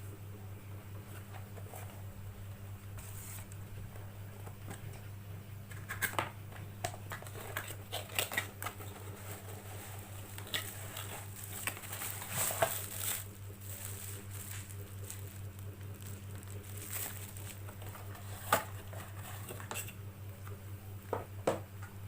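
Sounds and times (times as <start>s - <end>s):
steady low hum: 0.0s - 22.0s
packaging handled by hand: 5.7s - 19.9s.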